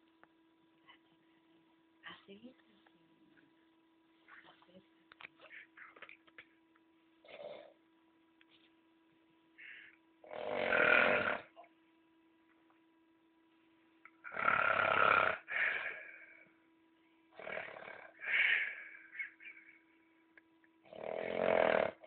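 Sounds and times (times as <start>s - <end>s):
man snoring loudly: 10.2s - 11.5s, 14.2s - 16.1s, 17.4s - 18.8s, 20.9s - 22.0s.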